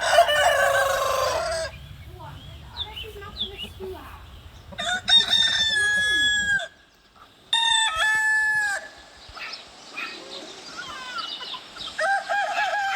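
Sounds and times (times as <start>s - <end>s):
roosters crowing: 0.0s - 9.0s, 11.9s - 12.9s.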